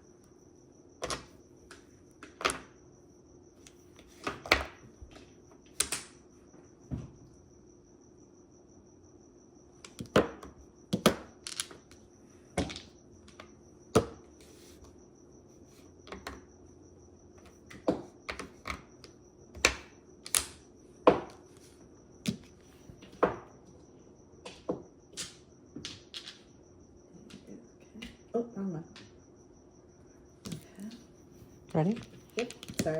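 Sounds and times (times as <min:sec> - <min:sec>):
mahjong tiles clacking: 0:11.4 - 0:12.0, 0:32.0 - 0:32.9.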